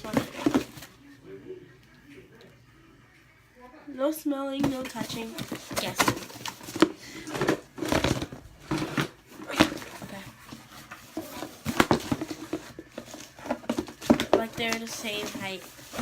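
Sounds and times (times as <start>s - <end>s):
plastic containers clicking and knocking: 4.6s - 10.3s, 11.0s - 16.0s.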